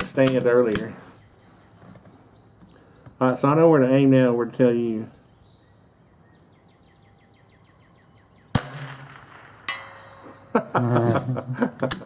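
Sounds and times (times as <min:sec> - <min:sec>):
birds chirping: 0:00.0 - 0:12.0
rifle shot: 0:08.5 - 0:10.4
metallic clink: 0:08.8 - 0:10.6.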